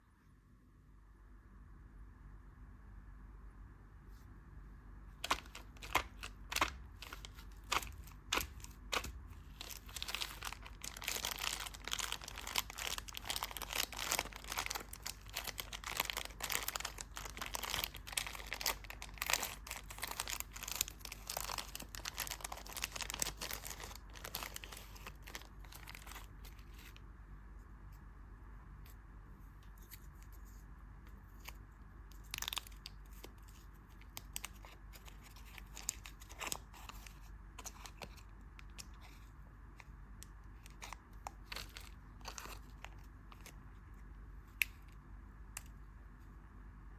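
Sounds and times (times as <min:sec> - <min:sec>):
candy wrapper crinkling: 0:05.2 - 0:27.0, 0:31.3 - 0:39.2, 0:40.2 - 0:44.9.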